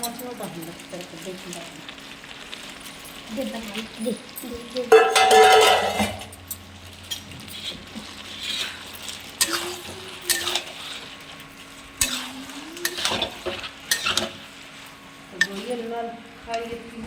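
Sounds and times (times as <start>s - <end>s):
metal spoon clinking on pot: 4.9s - 7.2s, 9.4s - 10.7s.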